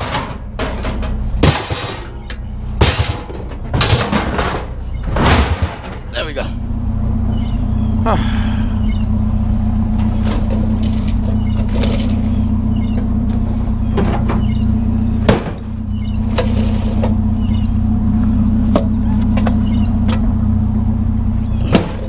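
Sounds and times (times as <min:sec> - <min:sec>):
knocks and clunks: 0:00.0 - 0:06.4, 0:09.9 - 0:20.3, 0:21.5 - 0:22.0
vehicle engine running: 0:00.0 - 0:22.0.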